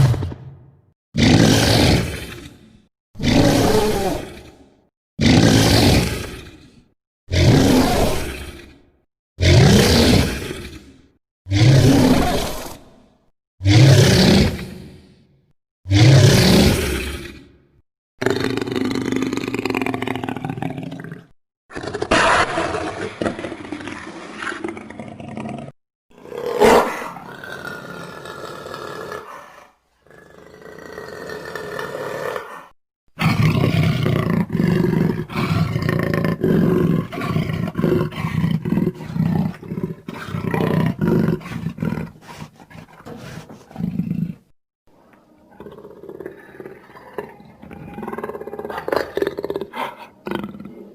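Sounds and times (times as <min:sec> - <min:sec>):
dinosaur roars and growls: 0:01.2 - 0:13.0, 0:13.6 - 0:15.1, 0:15.9 - 0:44.5, 0:45.5 - 0:50.9.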